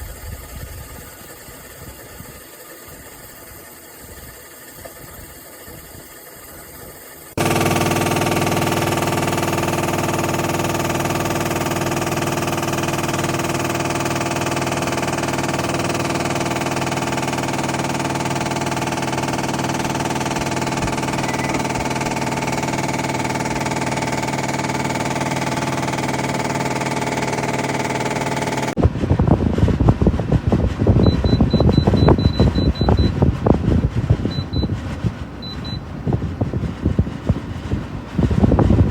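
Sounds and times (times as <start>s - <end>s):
air conditioner humming: 0.0s - 38.9s.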